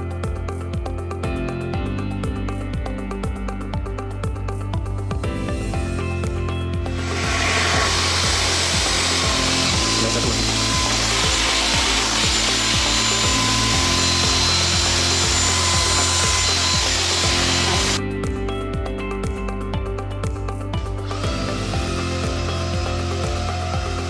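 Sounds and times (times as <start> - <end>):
background music with beat: 0.0 - 24.0
stick vacuum running: 6.9 - 18.0, 21.0 - 24.0.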